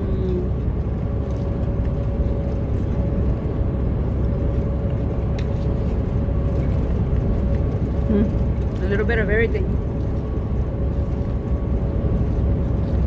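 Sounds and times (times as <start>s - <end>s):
diesel engine rumble: 0.0s - 13.0s.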